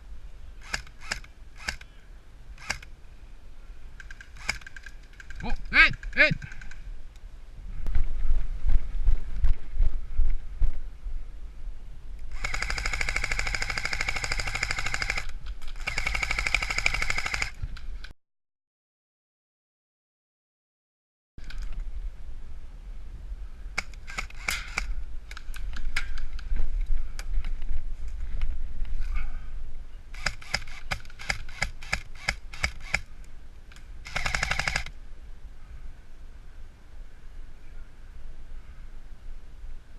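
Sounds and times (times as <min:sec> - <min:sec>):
airsoft gun firing full auto: 0:12.3 - 0:17.6, 0:23.8 - 0:24.9, 0:30.2 - 0:33.1, 0:34.0 - 0:34.9.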